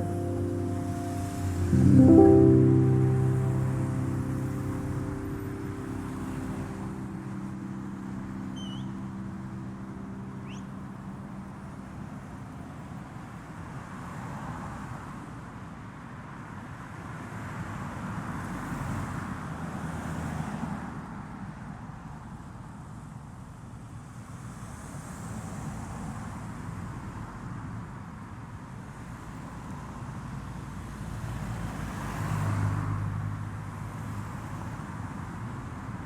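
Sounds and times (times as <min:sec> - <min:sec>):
background music: 0:00.0 - 0:11.8
car road and engine noise: 0:04.0 - 0:23.0, 0:24.4 - 0:36.0.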